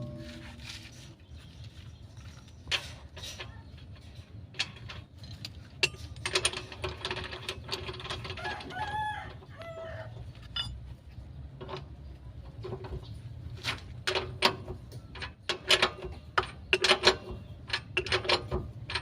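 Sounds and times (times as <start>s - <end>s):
rooster crowing: 8.4s - 10.2s.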